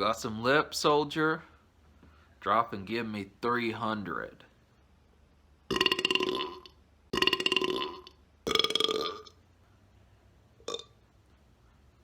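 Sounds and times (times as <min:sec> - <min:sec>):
man belching loudly: 0:05.7 - 0:09.3, 0:10.7 - 0:10.9.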